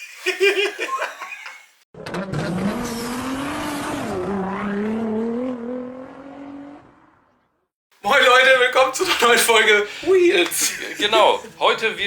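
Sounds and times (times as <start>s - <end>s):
motorcycle engine revving: 2.0s - 7.6s
people talking and laughing: 9.0s - 12.0s.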